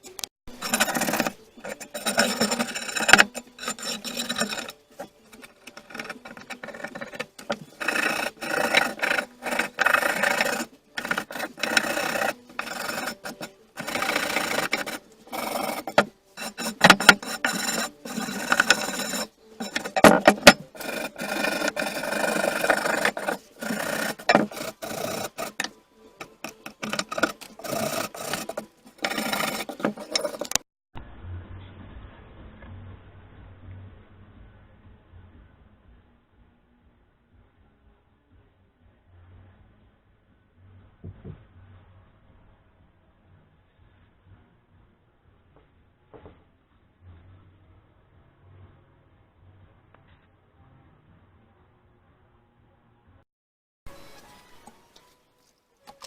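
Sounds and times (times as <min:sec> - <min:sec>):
rasping scraping on metal: 0:00.0 - 0:30.6.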